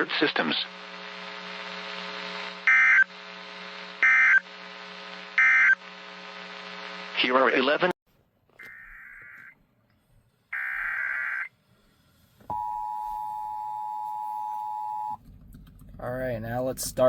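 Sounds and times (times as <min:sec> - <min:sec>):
warbling digital data screech: 0:02.7 - 0:03.1.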